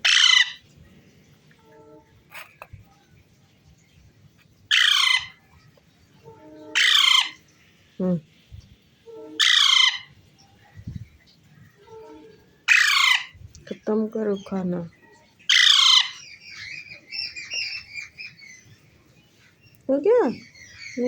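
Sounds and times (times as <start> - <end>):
parrot chattering: 0.0 - 0.6, 4.7 - 5.4, 6.7 - 7.4, 9.4 - 10.1, 12.7 - 13.4, 15.5 - 18.1
parrot squawking: 0.0 - 0.6, 4.7 - 5.4, 6.6 - 7.4, 9.3 - 10.2, 11.9 - 13.4, 15.4 - 18.5.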